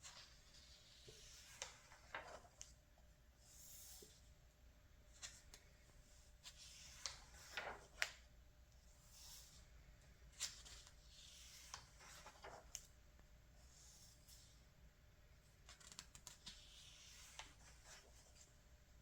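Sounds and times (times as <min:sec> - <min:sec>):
magazine pages turning: 0:00.1 - 0:02.8, 0:06.6 - 0:08.2, 0:11.6 - 0:12.9.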